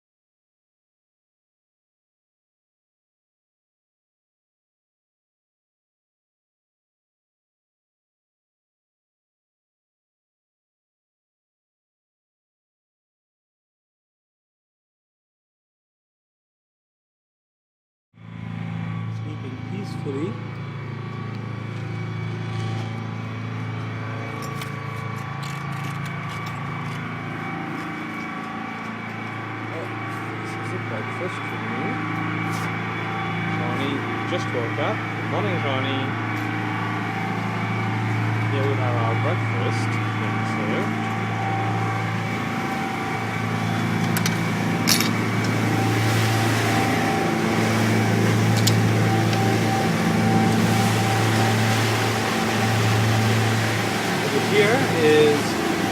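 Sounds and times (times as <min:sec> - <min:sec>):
boat machinery humming: 0:18.2 - 0:55.9.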